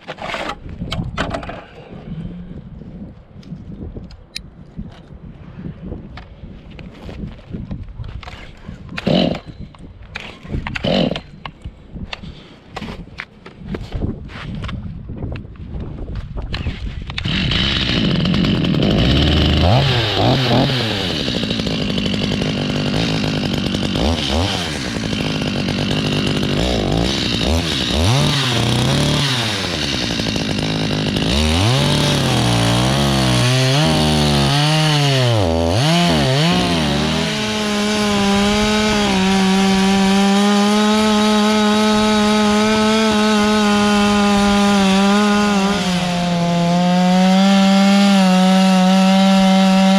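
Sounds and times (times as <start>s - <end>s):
chainsaw cutting log: 8.3s - 9.5s, 10.2s - 11.5s, 17.1s - 49.9s.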